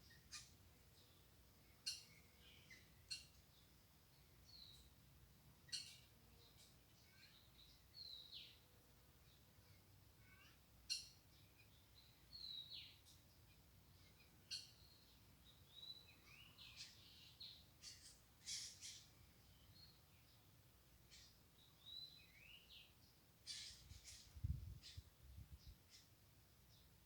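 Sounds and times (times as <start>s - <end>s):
faint outdoor background noise: 0.0s - 27.0s
small birds chirping and whistling: 1.8s - 3.4s, 5.7s - 8.6s, 10.9s - 13.2s, 14.1s - 20.0s, 21.1s - 22.9s, 23.5s - 26.1s.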